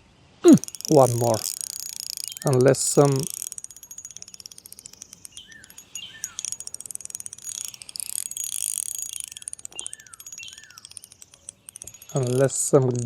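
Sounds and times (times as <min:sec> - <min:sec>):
birds chirping: 0:00.4 - 0:13.0
fast mechanical ticking: 0:00.5 - 0:13.0.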